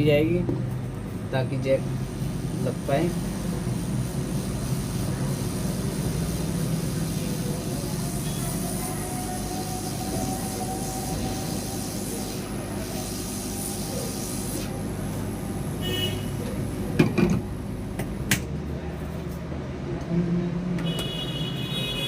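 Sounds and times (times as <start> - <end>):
hot air station blowing: 0.8 - 18.4.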